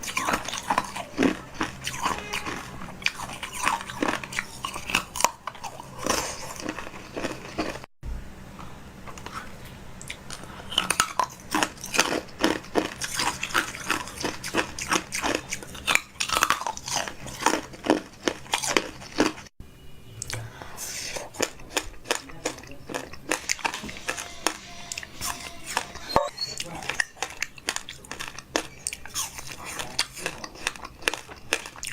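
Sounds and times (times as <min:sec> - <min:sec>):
crunching and chewing crisp food: 0:00.0 - 0:07.9, 0:08.6 - 0:19.5, 0:20.2 - 0:31.9.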